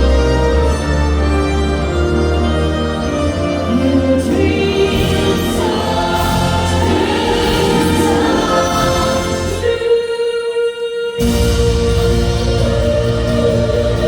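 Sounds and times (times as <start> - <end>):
choir-like singing: 0.0 - 14.0
deep bass: 11.2 - 14.0.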